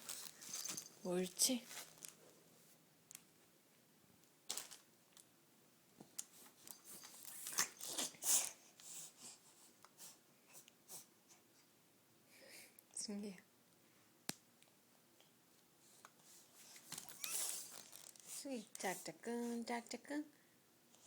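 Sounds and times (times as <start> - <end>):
baby rustling and scuffing: 0.0 - 2.2.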